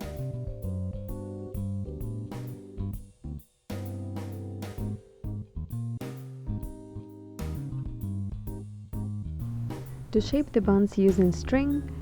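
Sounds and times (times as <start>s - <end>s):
keyboard: 0.0s - 3.1s, 3.7s - 8.6s, 9.4s - 12.0s
bass line: 4.8s - 12.0s
steady beat: 9.5s - 12.0s.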